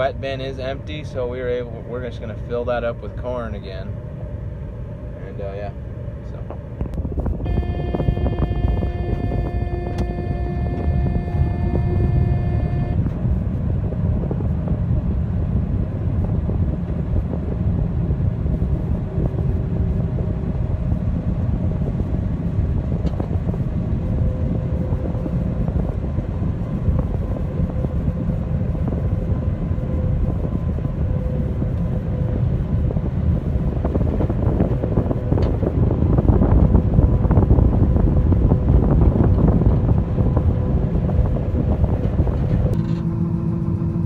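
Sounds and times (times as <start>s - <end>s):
combine harvester running: 0.0s - 44.0s
steady high tone: 7.2s - 13.2s.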